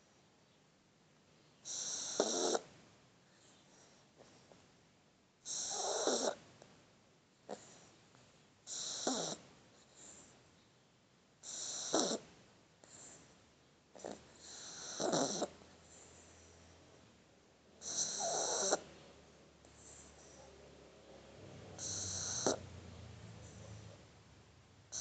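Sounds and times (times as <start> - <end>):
puppy snoring: 1.6 - 2.7, 5.4 - 6.4, 7.5 - 7.9, 8.6 - 10.3, 11.4 - 13.2, 13.9 - 16.8, 17.8 - 24.1
puppy breathing softly: 7.5 - 10.5, 11.4 - 17.1, 17.8 - 24.2.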